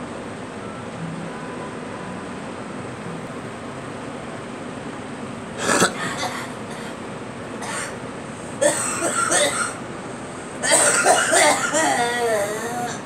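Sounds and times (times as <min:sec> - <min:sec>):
steady background hiss: 0:00.0 - 0:13.0
girl coughing: 0:05.6 - 0:07.0, 0:07.6 - 0:08.0, 0:08.6 - 0:09.8, 0:10.6 - 0:13.0.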